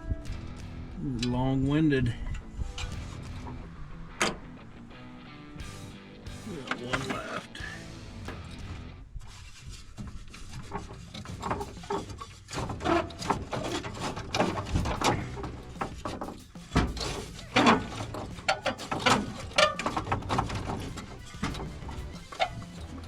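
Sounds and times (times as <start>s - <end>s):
hand tools tapping on metal: 10.5s - 23.0s.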